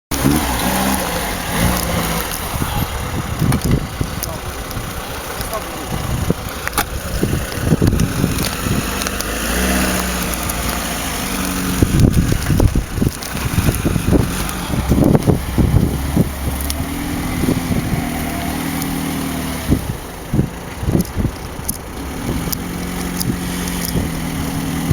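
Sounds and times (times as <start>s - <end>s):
car engine running: 0.1s - 24.9s
low thumps and knocks: 6.0s - 24.9s.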